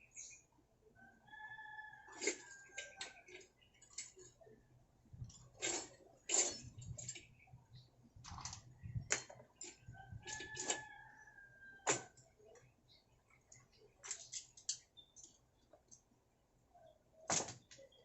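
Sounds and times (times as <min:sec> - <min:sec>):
hand tools clicking and scraping: 0:02.1 - 0:04.4, 0:05.2 - 0:07.4, 0:08.2 - 0:11.1, 0:13.5 - 0:16.0.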